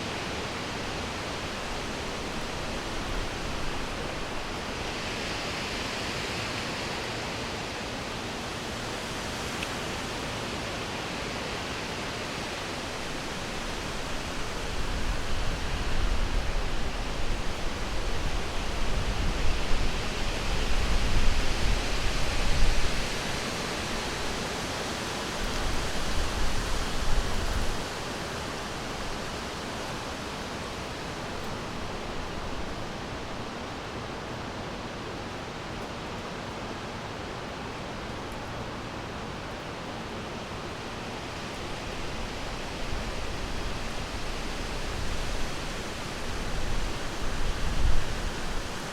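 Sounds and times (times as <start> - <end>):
wind blowing through trees: 0.0 - 48.9
low wind rumble: 12.9 - 30.2, 36.3 - 48.9.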